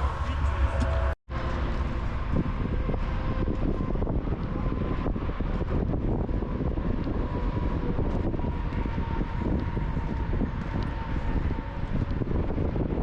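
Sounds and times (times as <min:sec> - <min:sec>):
low rumble: 0:00.0 - 0:13.0
wind buffeting microphone: 0:00.0 - 0:13.0.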